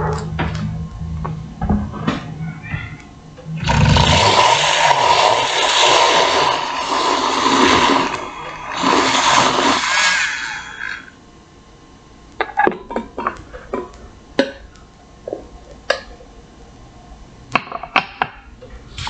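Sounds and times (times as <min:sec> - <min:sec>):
blender running: 0:03.6 - 0:11.1.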